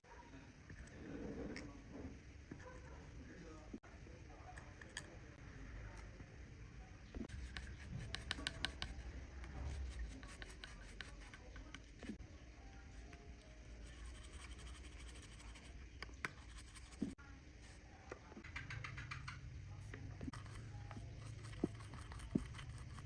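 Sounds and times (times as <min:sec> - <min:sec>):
tools scratching on watch: 0:07.2 - 0:12.2, 0:13.9 - 0:17.2, 0:20.3 - 0:23.0.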